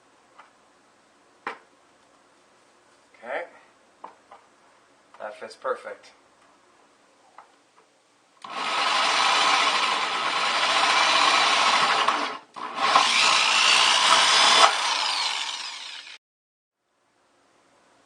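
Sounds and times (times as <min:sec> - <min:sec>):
power drill boring: 0:08.4 - 0:16.2.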